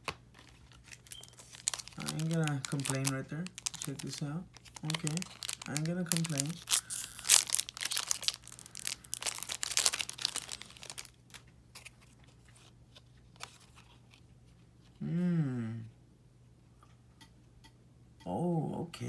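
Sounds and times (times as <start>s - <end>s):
foil wrapper crinkling and tearing: 0.3s - 12.6s
person humming: 15.0s - 16.0s.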